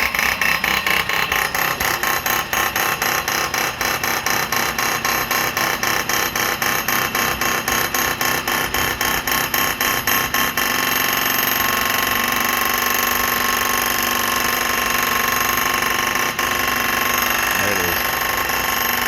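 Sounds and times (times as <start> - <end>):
loud harsh pulsing tone: 17.5 - 19.0.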